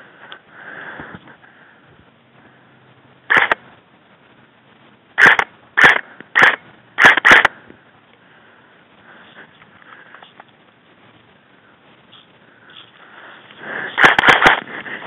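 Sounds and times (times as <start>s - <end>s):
airsoft gun shots: 3.3s - 3.6s, 5.2s - 7.5s, 14.0s - 14.7s.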